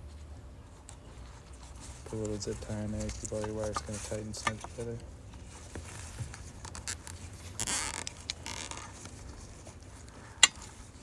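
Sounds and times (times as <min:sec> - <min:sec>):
wiring being handled: 0:00.9 - 0:10.8
cable tie ratcheting tight: 0:06.6 - 0:09.0.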